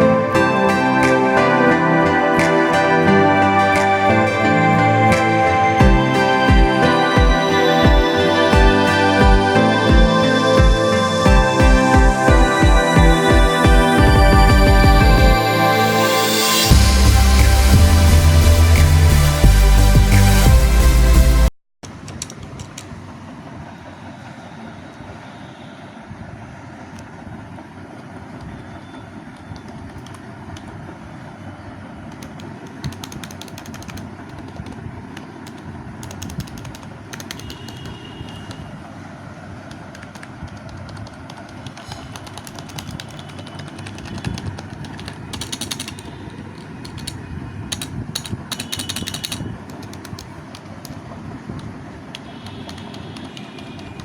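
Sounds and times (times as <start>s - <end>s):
steady background noise: 0.0s - 54.0s
keyboard keys clicking: 22.0s - 22.9s, 29.3s - 30.8s, 32.1s - 38.7s, 39.7s - 54.0s.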